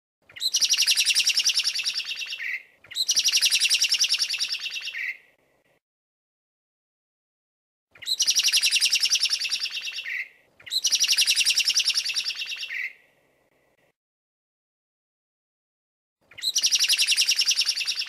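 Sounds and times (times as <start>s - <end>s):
blackbird singing: 0.3s - 5.3s, 8.0s - 13.0s, 16.3s - 18.0s.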